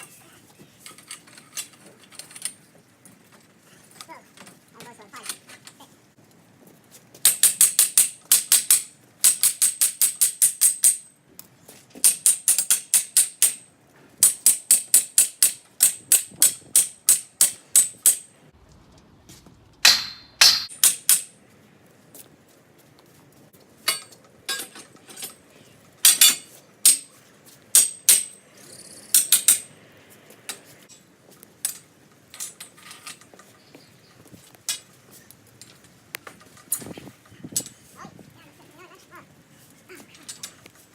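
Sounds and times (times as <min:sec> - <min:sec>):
sharp metallic clicks of tools: 0:29.1 - 0:29.7.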